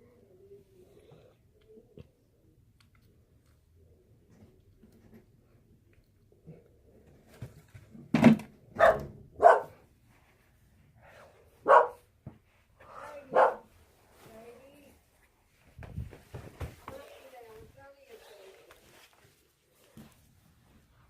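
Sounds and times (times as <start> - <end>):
dog barking: 8.8 - 9.8, 11.6 - 12.1, 13.3 - 13.7.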